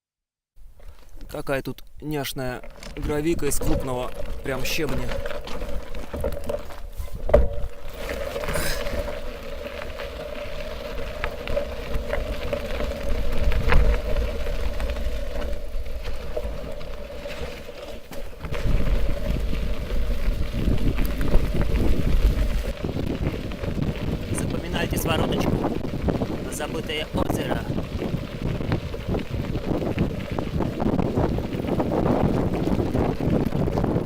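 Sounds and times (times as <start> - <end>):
bike tyres rumbling on gravel: 0.6 - 34.0
stones clicking and knocking: 0.8 - 10.4.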